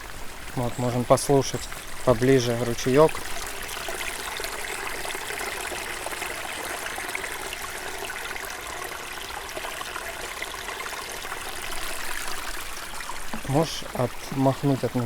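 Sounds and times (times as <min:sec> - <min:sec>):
brook babbling over stones: 0:00.0 - 0:15.0.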